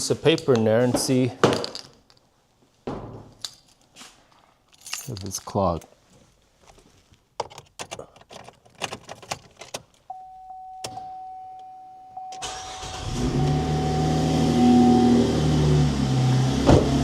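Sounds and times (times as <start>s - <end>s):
car engine starting and running: 12.2s - 17.0s.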